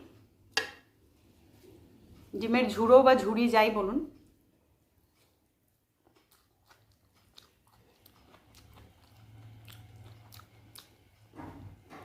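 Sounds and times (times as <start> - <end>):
person chewing food: 5.0 - 12.0.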